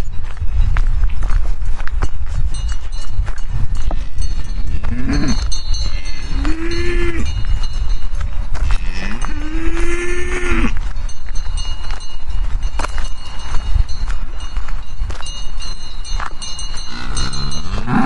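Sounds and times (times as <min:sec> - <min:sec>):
cow mooing: 0:04.9 - 0:07.3, 0:08.8 - 0:10.7, 0:16.9 - 0:18.0.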